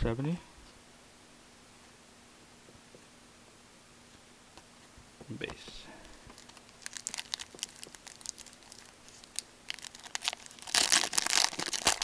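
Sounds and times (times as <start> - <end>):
plastic wrapper crinkling: 6.3 - 12.0.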